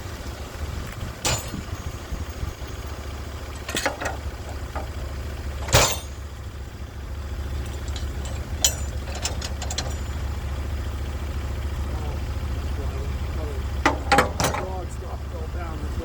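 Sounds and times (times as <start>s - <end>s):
sawmill engine droning: 0.0s - 16.0s
sharp knocks: 5.6s - 6.2s.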